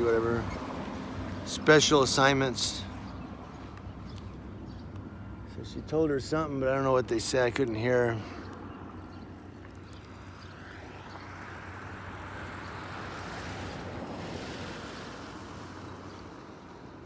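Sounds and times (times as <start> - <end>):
vehicle passing by rushing: 11.4 - 16.4.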